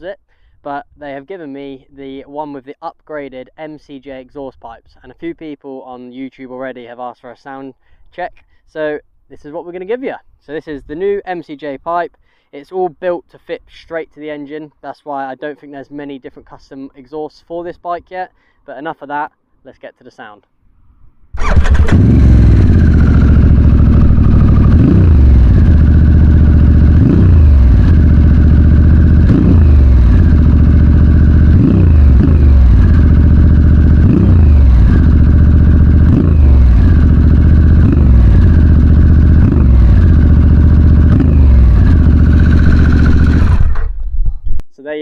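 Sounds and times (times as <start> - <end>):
motorcycle engine idling: 21.4 - 44.0
motorcycle throttle blips: 21.4 - 44.6.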